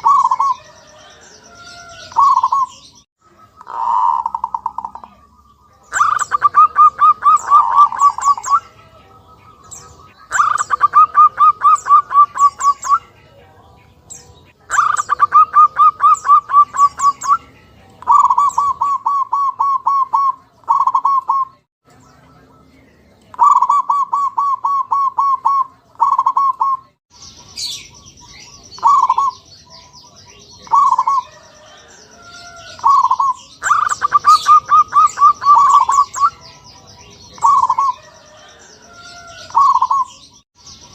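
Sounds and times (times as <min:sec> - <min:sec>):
high bird chirps: 0:00.0 - 0:13.2, 0:13.8 - 0:40.9
dove cooing: 0:00.0 - 0:13.6, 0:14.6 - 0:21.6, 0:23.3 - 0:26.9, 0:28.3 - 0:29.4, 0:30.3 - 0:36.5, 0:37.3 - 0:40.2.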